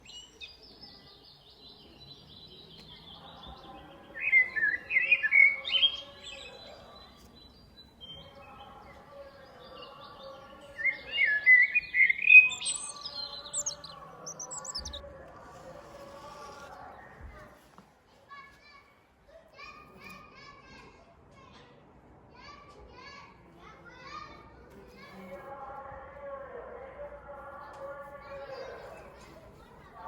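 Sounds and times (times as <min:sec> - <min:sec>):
songbird chirping: 0:00.0 - 0:17.8.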